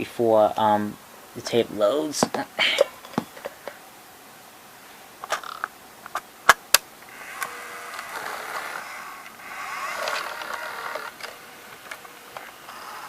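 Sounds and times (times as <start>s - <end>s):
sharp clicks: 5.2s - 13.0s
camcorder motors whirring: 7.0s - 13.0s.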